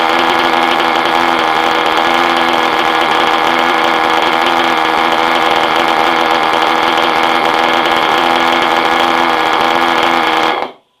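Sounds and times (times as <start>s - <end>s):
machine motor running: 0.0s - 10.8s.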